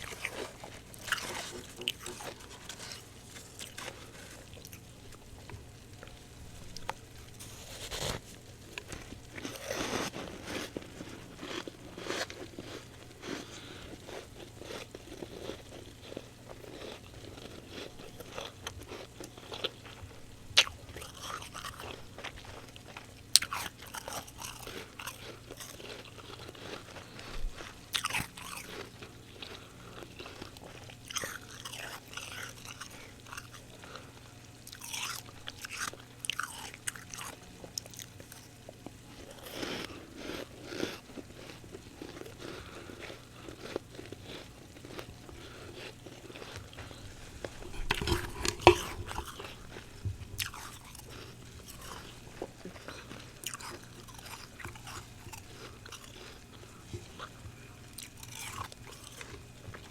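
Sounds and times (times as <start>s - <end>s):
crunching frost: 0.0s - 5.2s, 6.0s - 20.0s, 39.1s - 57.3s.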